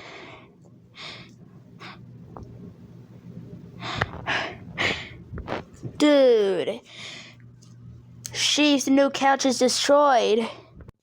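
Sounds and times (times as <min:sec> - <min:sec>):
person breathing: 0:00.0 - 0:02.0, 0:03.8 - 0:05.2, 0:06.8 - 0:07.4.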